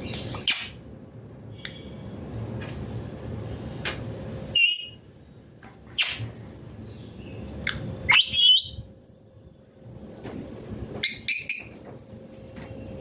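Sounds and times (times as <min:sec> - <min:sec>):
parrot chirps and calls: 0:00.0 - 0:00.8, 0:04.5 - 0:05.0, 0:05.9 - 0:06.3, 0:07.0 - 0:08.8, 0:11.0 - 0:11.8
low background noise: 0:00.0 - 0:13.0.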